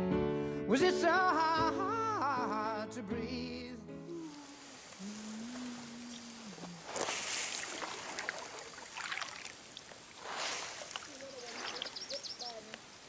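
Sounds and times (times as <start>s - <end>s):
kayak paddle splashing: 4.1s - 13.0s
water dripping: 4.2s - 13.0s.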